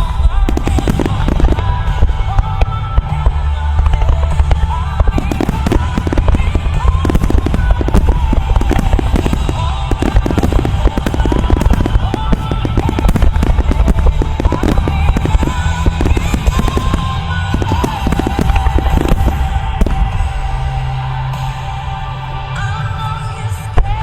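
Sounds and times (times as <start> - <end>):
music playing: 0.0 - 24.0
firework shells bursting: 4.0 - 20.3.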